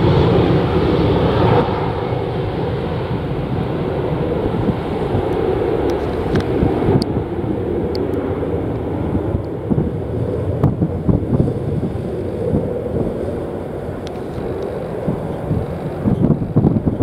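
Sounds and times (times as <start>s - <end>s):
gusty wind on microphone: 0.0s - 17.0s
jet engines rumbling: 0.0s - 17.0s.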